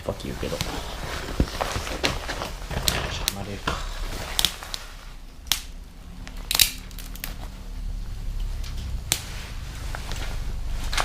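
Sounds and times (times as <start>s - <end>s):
wood fire crackling and popping: 0.0s - 11.0s.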